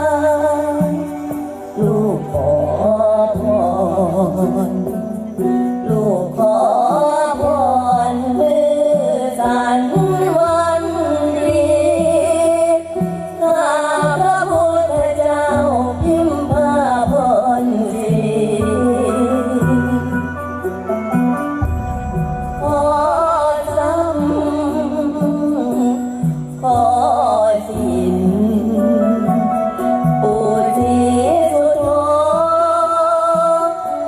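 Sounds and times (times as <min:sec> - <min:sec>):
person singing ornamented melody: 0:00.0 - 0:34.0
bass notes: 0:18.8 - 0:25.5.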